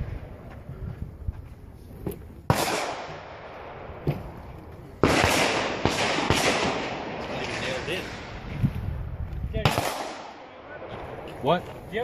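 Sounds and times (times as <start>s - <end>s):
pistol gunshots with echo: 2.5s - 4.1s, 5.0s - 8.4s, 9.6s - 11.3s.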